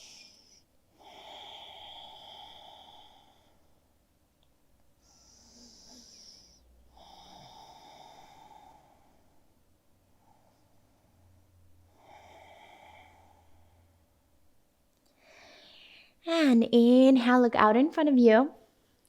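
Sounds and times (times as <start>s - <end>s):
deep breathing: 0.0s - 4.0s, 5.0s - 14.4s, 15.1s - 16.2s.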